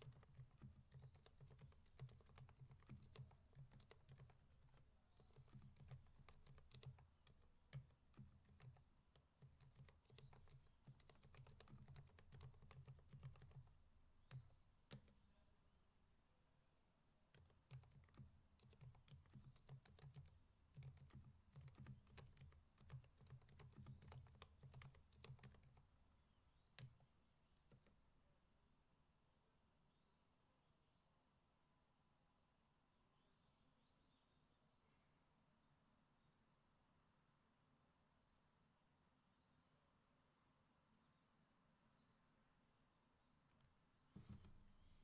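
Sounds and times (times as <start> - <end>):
muffled keyboard keystrokes: 0.0 - 15.4, 17.3 - 26.0, 26.6 - 28.0.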